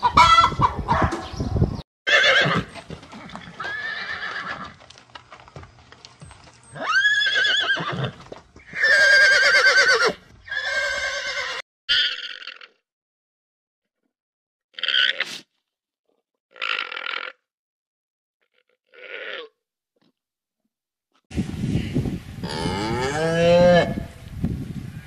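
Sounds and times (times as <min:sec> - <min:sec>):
horses whinnying: 0:02.1 - 0:04.9, 0:06.2 - 0:12.6
hoof clops: 0:02.4 - 0:09.5.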